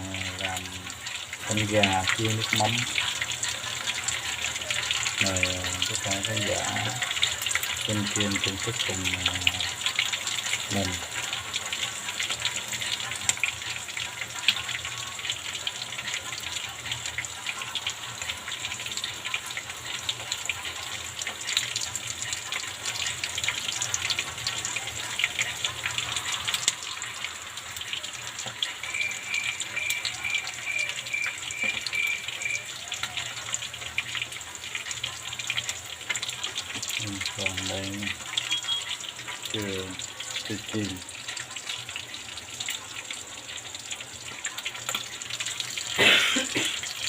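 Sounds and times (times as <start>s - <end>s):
chicken frying in hot oil: 0.0s - 47.0s
short high beeps: 38.4s - 39.0s.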